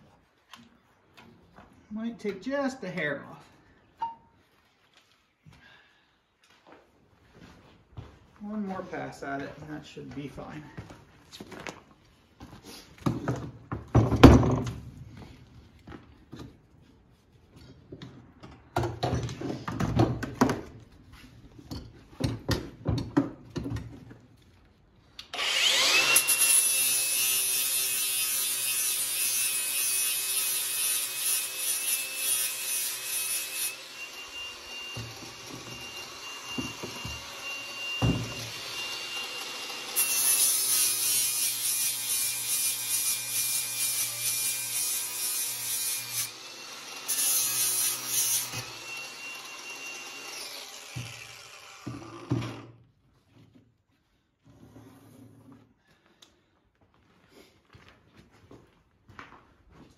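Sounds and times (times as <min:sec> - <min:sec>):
angle grinder grinding steel: 0:25.2 - 0:52.4.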